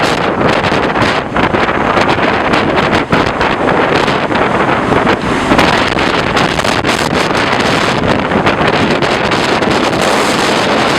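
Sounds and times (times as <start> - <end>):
gusty crackles: 0.0 - 10.9
hurricane wind buffeting microphone: 0.0 - 10.9.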